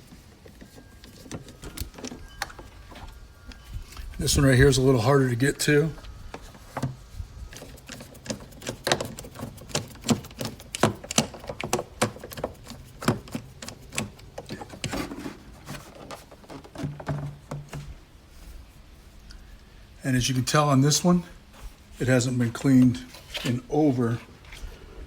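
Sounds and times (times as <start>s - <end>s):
plastic cover handled: 5.9s - 18.5s.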